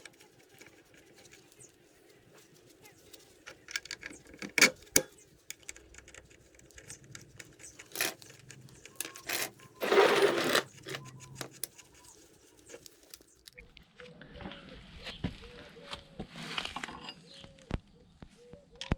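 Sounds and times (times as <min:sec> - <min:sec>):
metal tools clinking and knocking: 0:03.0 - 0:13.6.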